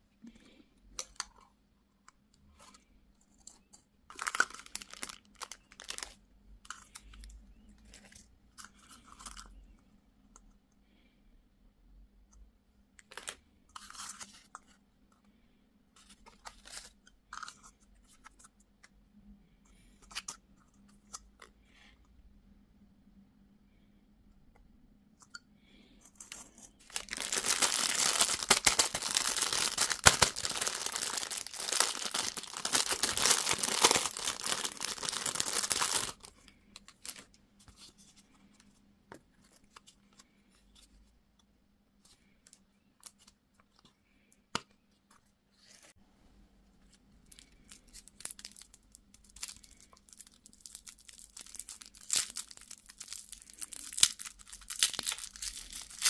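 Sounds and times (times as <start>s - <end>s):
food packaging crinkling and tearing: 4.1s - 7.2s, 26.2s - 37.3s, 47.3s - 56.0s.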